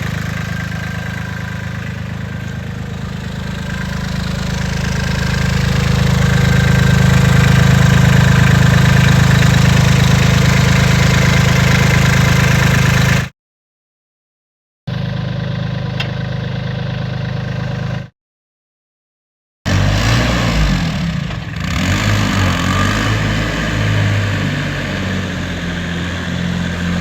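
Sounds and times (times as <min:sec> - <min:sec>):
tractor diesel engine idling and revving: 0:00.0 - 0:13.3, 0:14.9 - 0:18.1, 0:19.7 - 0:27.0.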